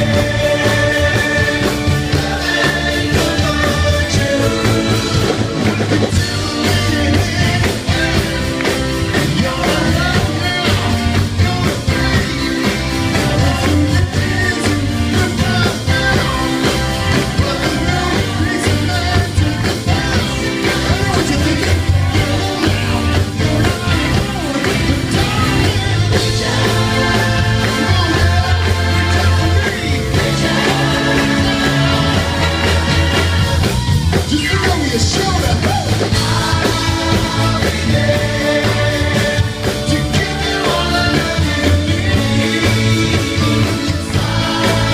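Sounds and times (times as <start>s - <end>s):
live pop-soul band with singing: 0.0s - 44.9s
steady bass line: 0.0s - 44.9s.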